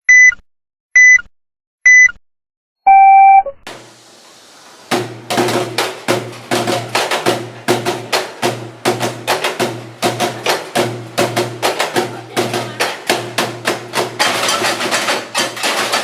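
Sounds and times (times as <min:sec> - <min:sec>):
electronic countdown beeps: 0:00.1 - 0:00.4, 0:01.0 - 0:01.3, 0:01.9 - 0:02.2, 0:02.9 - 0:03.6
noise swell: 0:03.7 - 0:05.4
music with fast percussion beat: 0:04.9 - 0:16.0.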